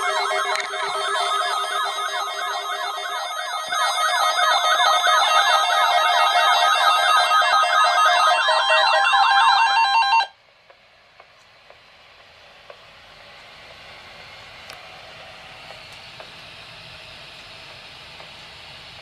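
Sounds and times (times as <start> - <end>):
electronic alarm warble: 0.0 - 10.4.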